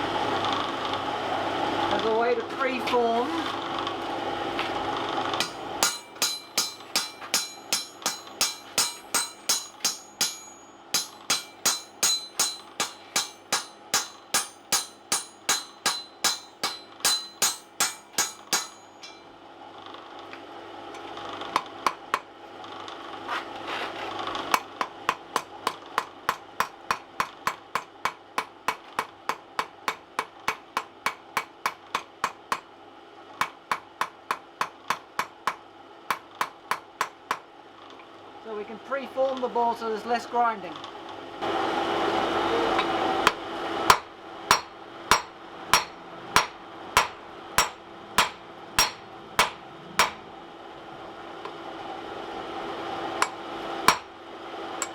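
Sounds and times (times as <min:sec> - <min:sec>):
hammer striking hot steel: 0:05.4 - 0:19.4, 0:24.5 - 0:32.7, 0:33.4 - 0:37.5, 0:42.7 - 0:50.2, 0:53.1 - 0:54.2.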